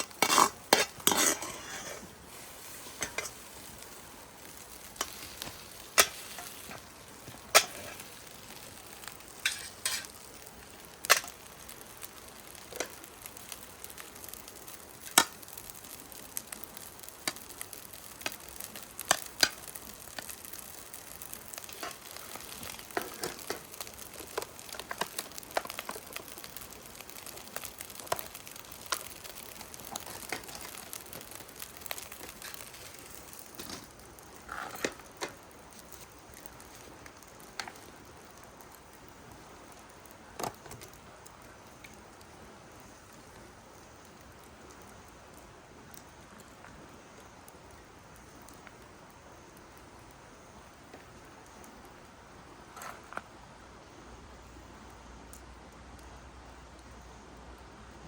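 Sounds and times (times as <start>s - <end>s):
food sizzling in frying pan: 0.0s - 45.4s.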